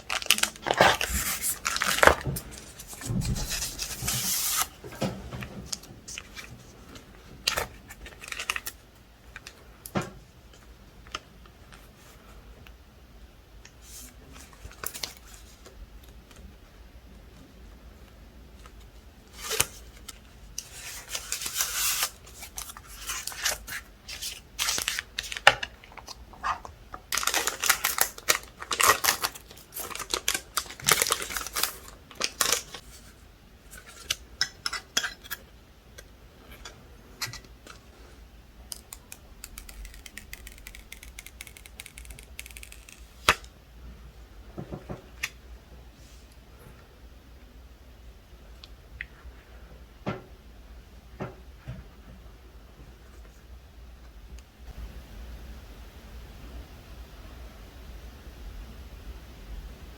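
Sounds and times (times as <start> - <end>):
packaging rustling and tearing: 0.0 - 4.8, 20.6 - 25.4, 27.1 - 32.8, 38.7 - 43.4
plastic clicks: 38.7 - 43.5.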